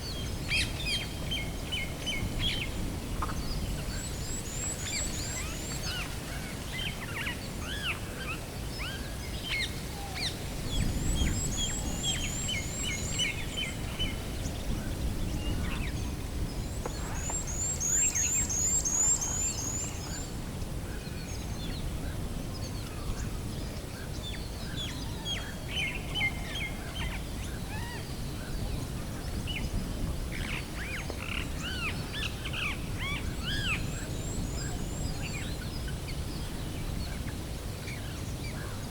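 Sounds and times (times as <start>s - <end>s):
birds singing and chirping: 0.1s - 6.2s, 8.7s - 20.3s.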